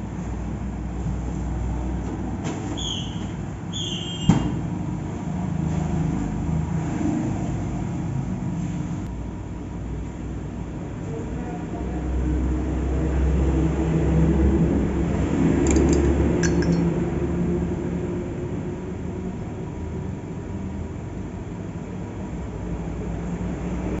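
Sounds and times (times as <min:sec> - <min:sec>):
light metallic clinks: 0:15.6 - 0:16.9.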